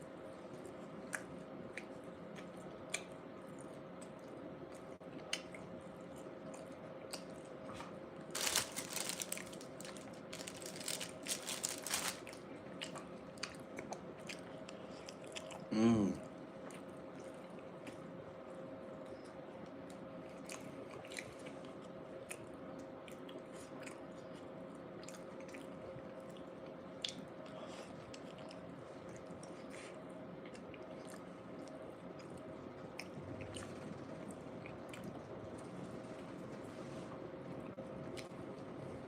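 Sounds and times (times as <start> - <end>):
faint steady hum: 0.0 - 39.0
person chewing food: 0.6 - 15.7, 20.2 - 22.4.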